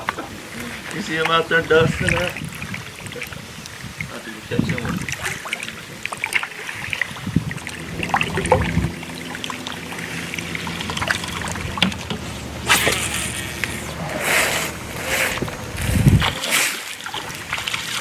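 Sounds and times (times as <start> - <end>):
water splashing: 0.0 - 18.0
steady low hum: 7.1 - 16.4.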